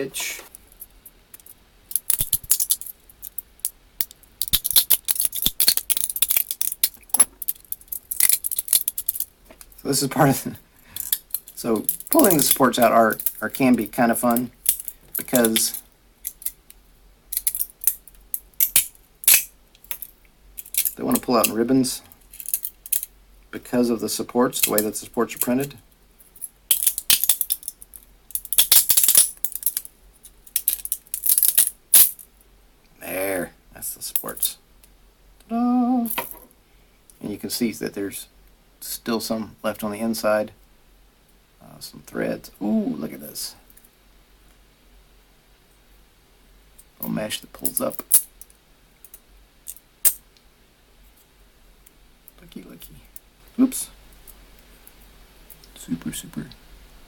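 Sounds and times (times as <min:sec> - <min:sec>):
plastic crackling and snapping: 0:01.3 - 0:09.7, 0:14.4 - 0:21.3, 0:26.7 - 0:29.9
plastic snapping and cracking: 0:04.0 - 0:09.7, 0:18.6 - 0:20.0.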